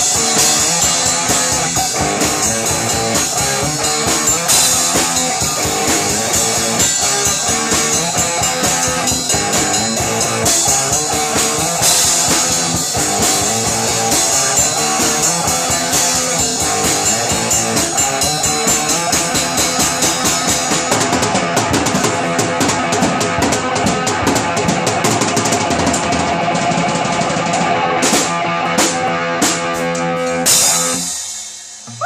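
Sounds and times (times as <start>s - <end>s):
drum hits: 0.0s - 26.3s
rock band music: 0.0s - 32.0s
cymbal crash ringing out: 30.5s - 32.0s.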